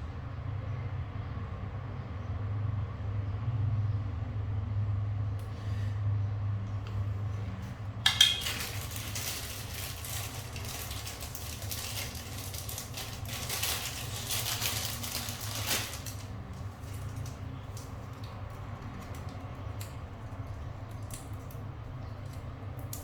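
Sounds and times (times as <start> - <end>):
metal tools scraping and rustling: 8.1 - 16.3.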